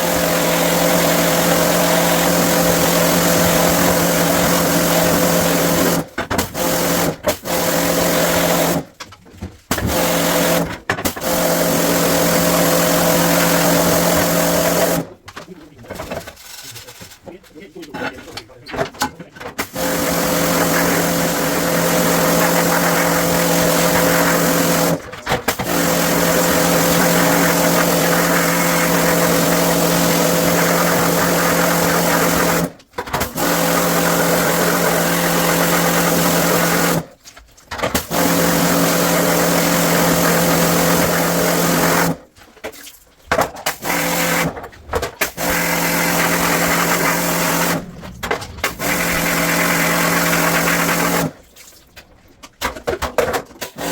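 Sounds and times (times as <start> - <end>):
electric machine humming and hissing: 45.4 - 51.4.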